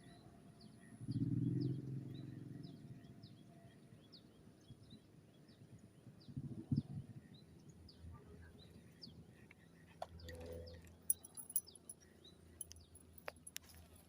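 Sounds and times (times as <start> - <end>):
birds chirping faintly: 7.2 - 13.9.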